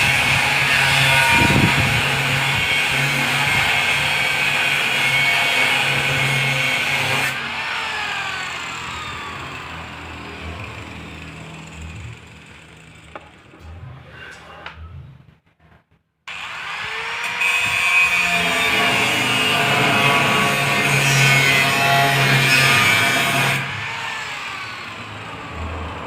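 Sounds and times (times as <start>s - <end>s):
electric power tool winding down: 5.8s - 13.0s, 16.3s - 17.6s, 18.4s - 26.0s.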